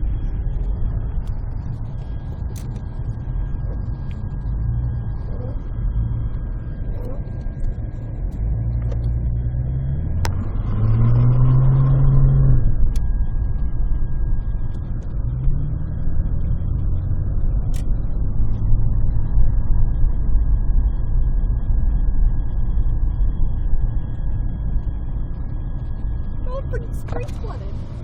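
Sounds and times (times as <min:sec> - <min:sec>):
vehicle engine revving: 0:08.4 - 0:13.1.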